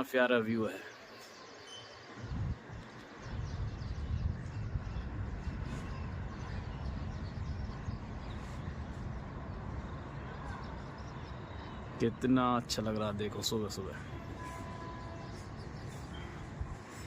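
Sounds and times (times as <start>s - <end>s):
faint birds calling: 0.0s - 17.0s
wind buffeting microphone: 2.1s - 13.4s, 14.0s - 17.0s.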